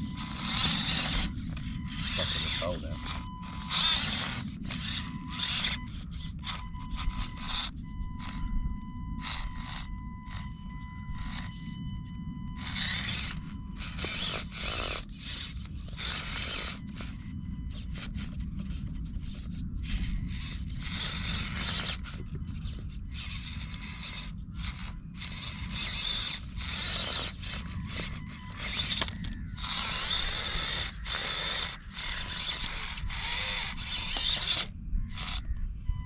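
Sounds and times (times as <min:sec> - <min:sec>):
tyres scraping over rock: 0:00.0 - 0:08.4, 0:12.6 - 0:35.6
small electric motor whirring: 0:00.0 - 0:36.0.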